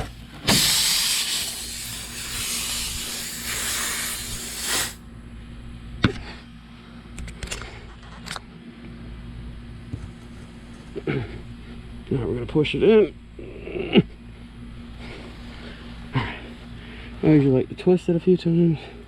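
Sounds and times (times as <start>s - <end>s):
air hissing from tire puncture: 0.0s - 5.0s.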